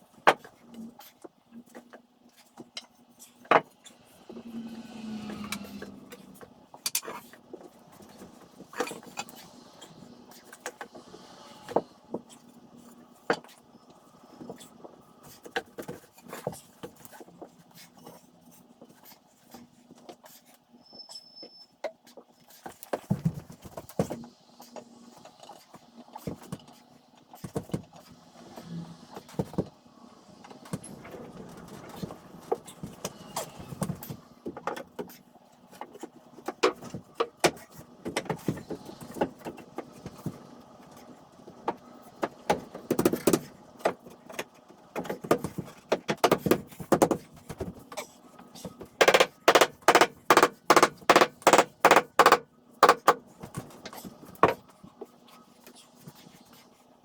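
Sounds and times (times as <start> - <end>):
knocks and clatter on wood: 41.7 - 48.0, 48.8 - 54.6.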